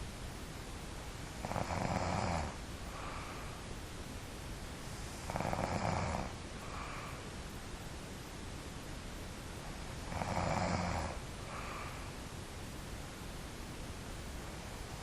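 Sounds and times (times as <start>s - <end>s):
person snoring: 1.4s - 3.2s, 5.2s - 7.1s, 10.1s - 12.1s.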